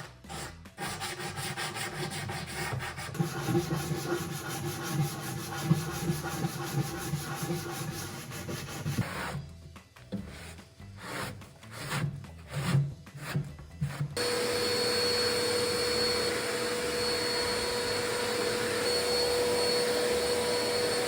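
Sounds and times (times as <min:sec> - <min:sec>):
sandpaper rubbing on wood: 0:00.0 - 0:09.5, 0:10.2 - 0:14.1
whining motor: 0:14.2 - 0:21.0.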